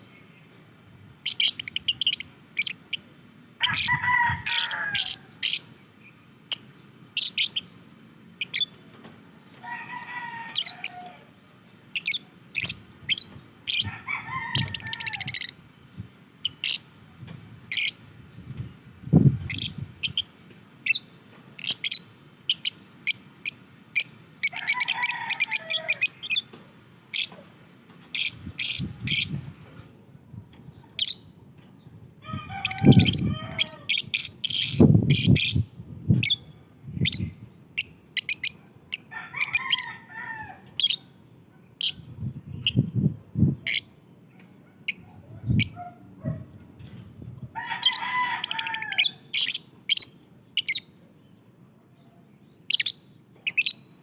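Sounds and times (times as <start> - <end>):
warbling bird chatter: 17.6 - 29.8, 32.5 - 40.0.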